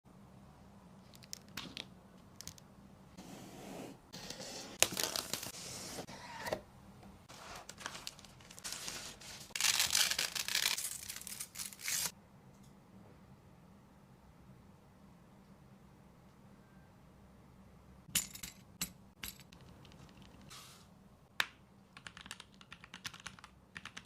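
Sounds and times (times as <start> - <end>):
plastic packaging tearing and crinkling: 7.7 - 12.1.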